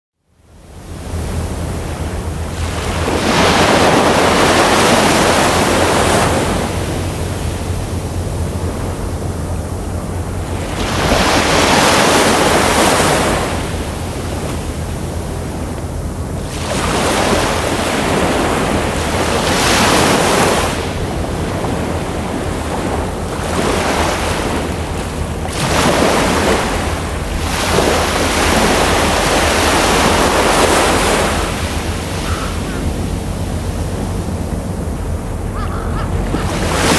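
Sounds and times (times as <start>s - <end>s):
ocean waves breaking on shore: 0.2s - 36.9s
steady low rumble: 0.3s - 36.9s.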